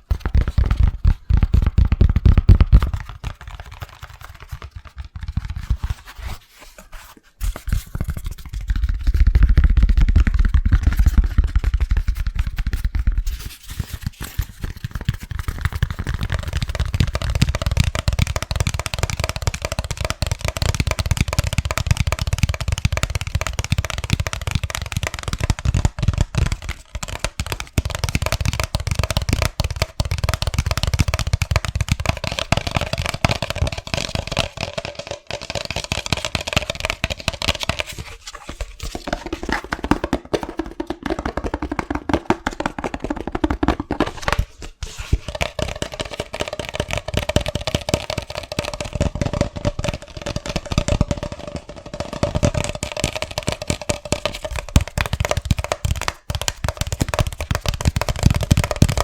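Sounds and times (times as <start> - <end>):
fingertips tapping hard objects: 13.8 - 59.0.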